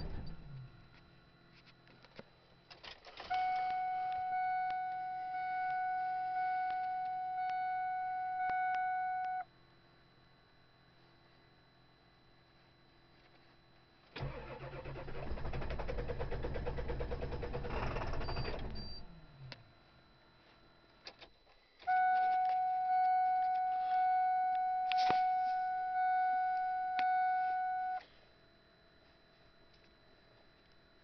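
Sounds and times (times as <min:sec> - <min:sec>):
starter cranking engine: 0:14.2 - 0:18.8.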